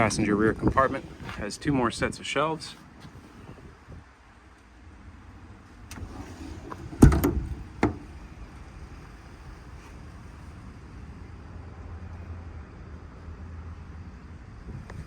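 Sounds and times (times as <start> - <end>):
low wind rumble: 0.0 - 15.0
metal door banging shut: 6.1 - 8.1.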